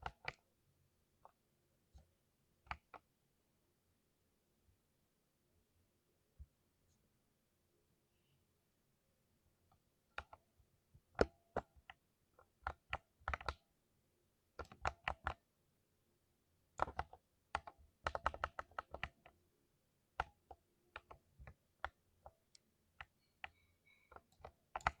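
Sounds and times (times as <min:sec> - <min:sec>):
typing on computer keyboard: 0:00.0 - 0:00.4, 0:02.7 - 0:03.1, 0:11.2 - 0:13.6, 0:14.6 - 0:15.4, 0:16.8 - 0:19.3, 0:20.2 - 0:22.4, 0:23.0 - 0:25.0.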